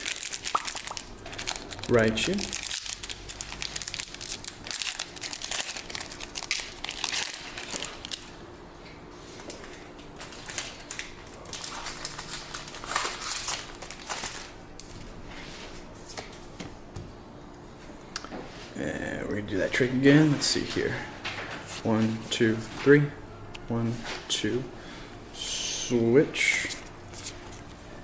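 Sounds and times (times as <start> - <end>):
foil wrapper crinkling: 0.0 - 8.3, 9.6 - 15.0.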